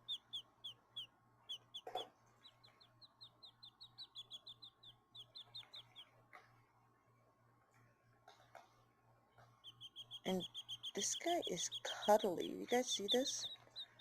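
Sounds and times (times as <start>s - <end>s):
quail chicks peeping: 0.0s - 6.4s, 9.4s - 14.0s.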